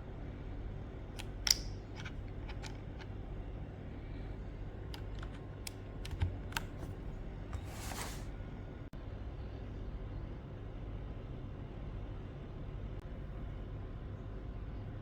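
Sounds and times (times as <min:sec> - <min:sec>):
steady low hum: 0:00.0 - 0:15.0
mechanical keyboard clicks: 0:05.0 - 0:06.8.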